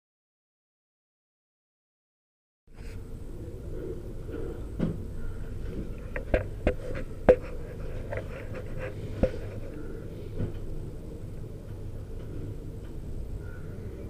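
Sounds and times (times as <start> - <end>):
low background rumble: 2.7 - 14.0
sharp clicks and knocks: 4.8 - 9.8.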